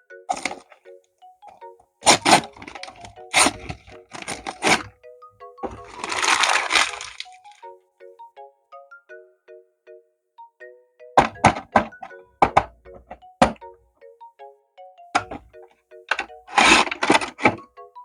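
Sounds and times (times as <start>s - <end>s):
packaging rustling tear: 0.3s - 0.6s, 2.0s - 4.9s, 5.6s - 7.5s, 16.1s - 17.6s
plastic packaging crackling: 0.3s - 0.7s, 2.0s - 4.9s, 5.6s - 7.6s, 16.1s - 17.6s.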